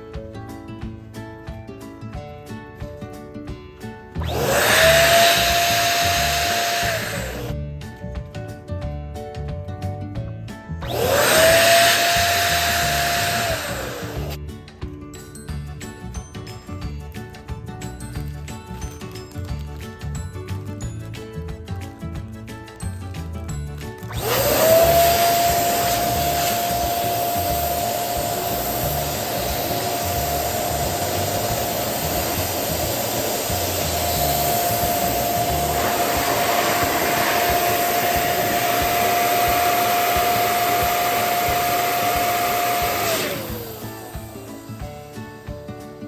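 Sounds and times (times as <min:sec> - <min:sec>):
balloon pump motor whine: 0:04.2 - 0:07.6, 0:10.8 - 0:14.4, 0:24.0 - 0:45.7.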